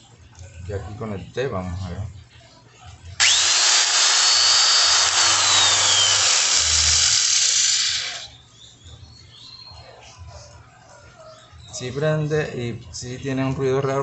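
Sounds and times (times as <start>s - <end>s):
angle grinder whining: 3.2s - 8.3s.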